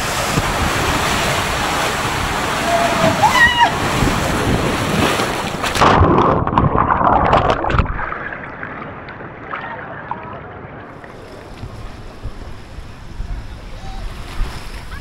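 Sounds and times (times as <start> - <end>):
wind on microphone: 0.0 - 8.1, 11.1 - 15.0
water splashing and rushing: 0.0 - 15.0.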